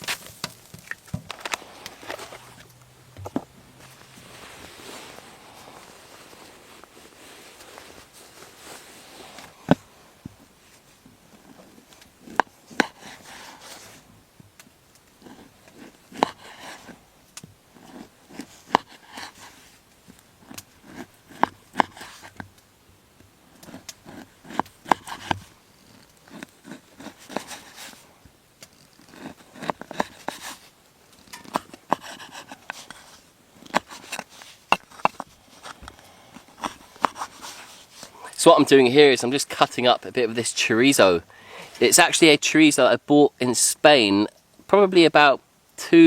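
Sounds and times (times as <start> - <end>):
scraping and rustling: 0.0 - 14.1, 23.5 - 41.9
objects clicking and knocking: 33.6 - 37.6.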